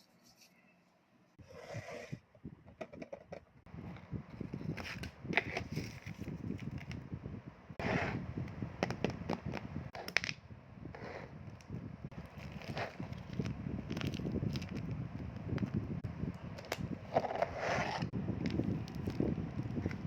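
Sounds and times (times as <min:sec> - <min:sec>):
packaging rustling and crinkling: 0:04.7 - 0:07.0, 0:12.2 - 0:14.9, 0:18.4 - 0:20.0.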